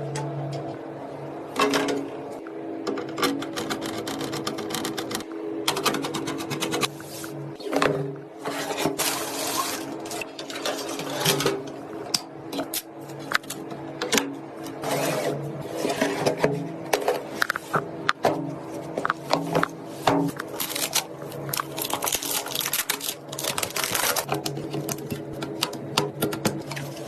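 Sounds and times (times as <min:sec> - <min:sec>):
steady low hum: 0:00.0 - 0:27.0
computer parts clicking and rattling: 0:02.9 - 0:06.9, 0:20.4 - 0:27.0.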